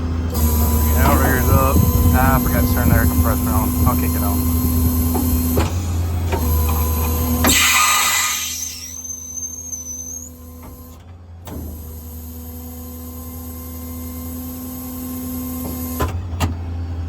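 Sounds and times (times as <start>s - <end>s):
compressor mechanical hum: 0.0s - 17.0s
brief whistle: 7.5s - 10.4s.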